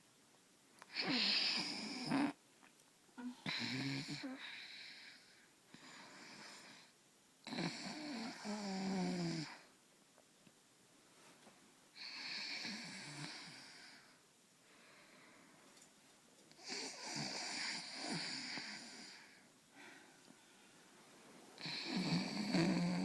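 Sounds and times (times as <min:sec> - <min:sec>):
quiet breaths: 0:03.1 - 0:09.8, 0:11.0 - 0:23.0
person snoring: 0:16.6 - 0:19.4, 0:21.6 - 0:23.0.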